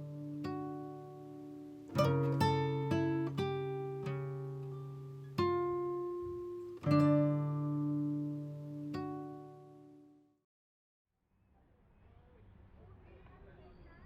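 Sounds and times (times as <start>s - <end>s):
acoustic guitar chords: 0.0s - 10.4s.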